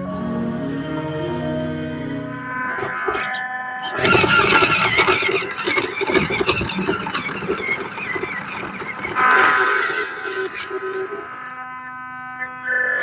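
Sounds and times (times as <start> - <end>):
toy truck motor whining: 2.7 - 11.7.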